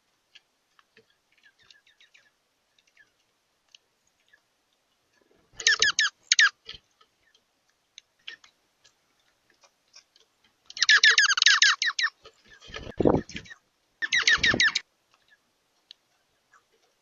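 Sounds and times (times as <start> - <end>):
bird chattering calls: 5.6 - 6.6, 10.8 - 14.8
faint ticks: 6.6 - 10.8, 15.0 - 17.0.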